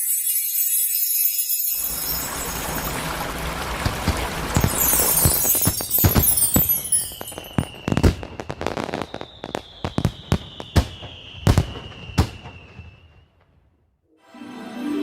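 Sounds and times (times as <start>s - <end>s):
firework whistle falling: 1.7s - 13.4s
fireworks bangs and crackles: 1.8s - 13.7s
music: 14.1s - 15.0s.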